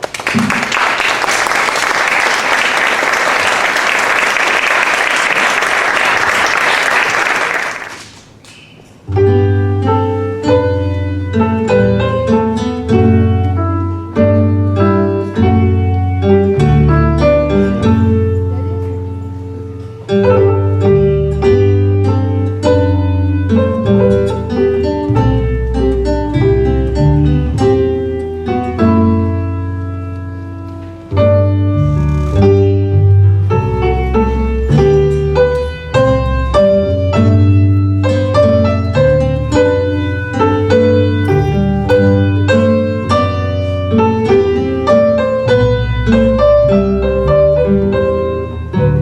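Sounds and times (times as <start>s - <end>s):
baroque instrumental music: 9.1s - 49.0s.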